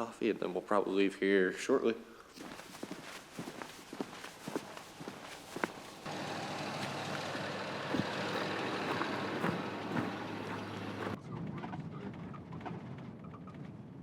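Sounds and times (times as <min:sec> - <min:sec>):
road noise: 0:02.4 - 0:11.2
vehicle engine hum: 0:04.5 - 0:11.2.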